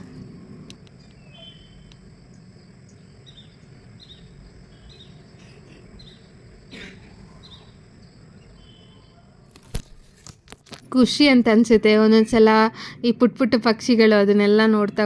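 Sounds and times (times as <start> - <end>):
crickets droning: 0.0 - 9.9.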